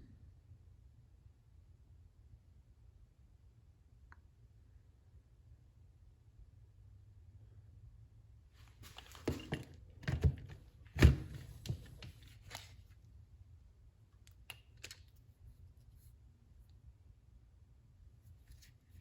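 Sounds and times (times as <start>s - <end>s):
tool parts knocking and clattering: 9.0s - 12.1s.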